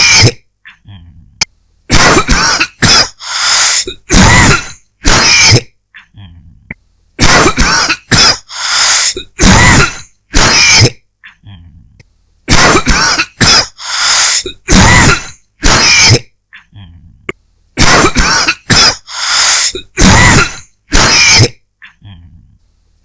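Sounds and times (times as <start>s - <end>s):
person coughing: 0.0s - 0.4s, 1.9s - 6.3s, 7.2s - 11.0s, 12.5s - 16.9s, 17.8s - 22.2s.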